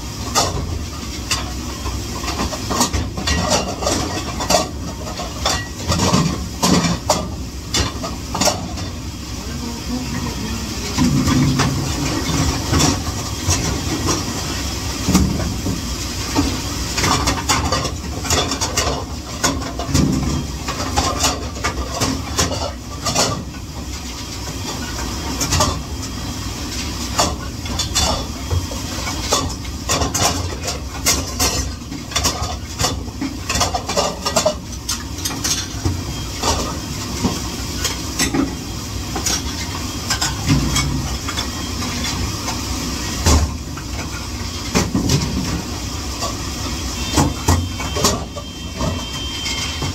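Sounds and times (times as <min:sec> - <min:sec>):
dishes and cutlery clattering: 0:02.2 - 0:09.0.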